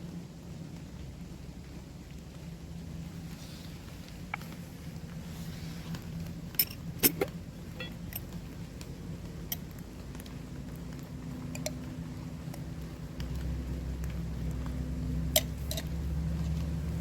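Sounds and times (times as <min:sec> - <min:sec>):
steady low background noise: 0:00.0 - 0:17.0.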